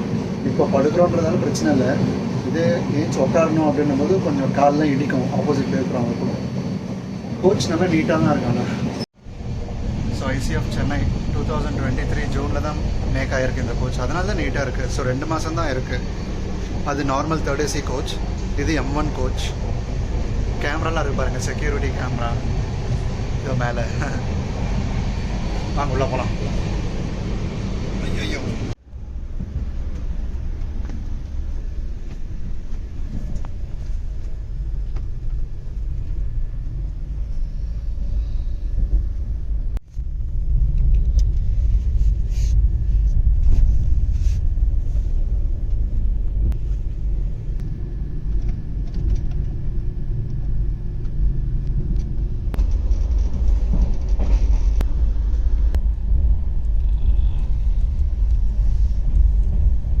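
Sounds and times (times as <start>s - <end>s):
train rumbling on rails: 0.0s - 60.0s.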